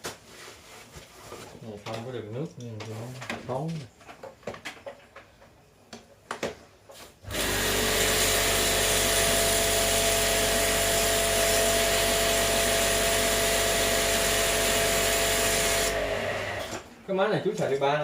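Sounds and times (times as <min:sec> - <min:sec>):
electric power tool running: 0:07.3 - 0:16.8.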